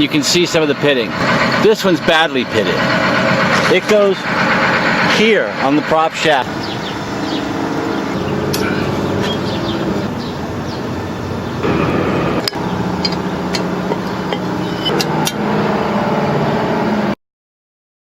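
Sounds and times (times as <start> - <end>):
engine drone: 0.0 - 17.2.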